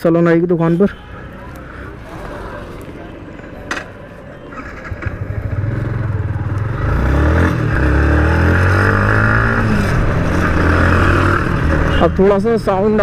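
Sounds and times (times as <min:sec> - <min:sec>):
motorcycle engine accelerating: 0:04.5 - 0:12.0.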